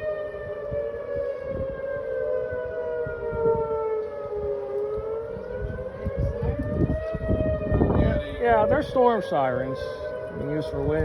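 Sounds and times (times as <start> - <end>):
storm warning sirens wailing: 0.0 - 11.0
wind buffeting microphone: 0.0 - 11.0.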